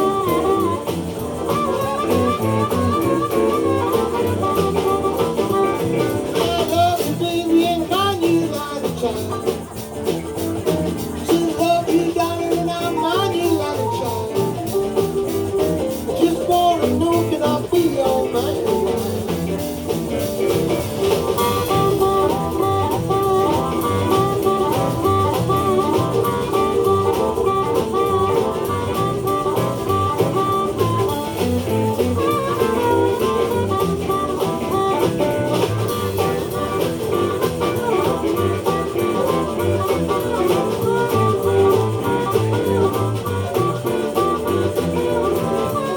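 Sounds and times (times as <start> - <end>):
lead guitar lines: 0.0 - 45.9
live blues band playing: 0.0 - 45.9.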